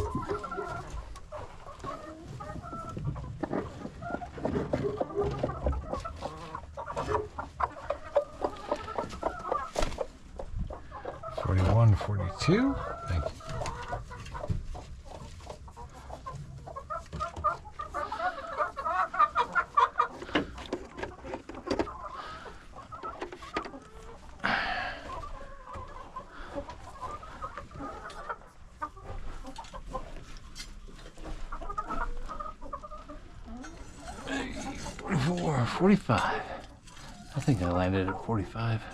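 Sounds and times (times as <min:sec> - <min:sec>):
chickens clucking: 0:00.0 - 0:38.9.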